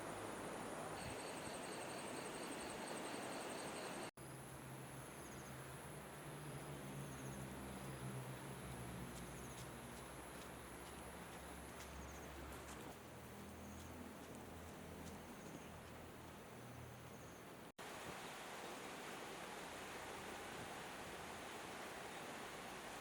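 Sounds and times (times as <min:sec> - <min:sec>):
insects chirping in trills: 0:00.0 - 0:08.1, 0:16.6 - 0:17.6
river water flowing: 0:00.0 - 0:16.9, 0:17.5 - 0:23.0
thin high steady tone: 0:01.0 - 0:04.1
river water rushing: 0:17.8 - 0:23.0.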